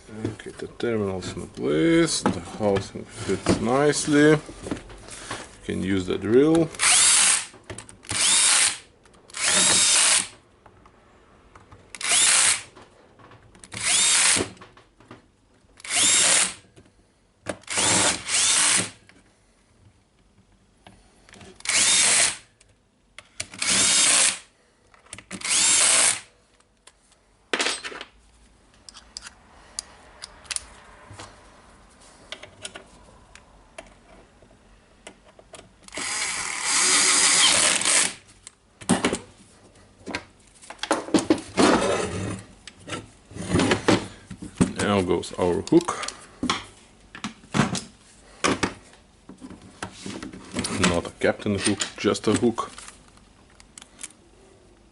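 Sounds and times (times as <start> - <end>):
cordless drill driving screws: 6.8 - 10.3, 12.0 - 12.7, 13.8 - 14.5, 15.8 - 16.6, 17.6 - 19.0, 21.6 - 22.5, 23.5 - 24.5, 25.3 - 26.3, 35.9 - 38.2
faint clicks and handling: 28.7 - 30.8, 48.9 - 54.9.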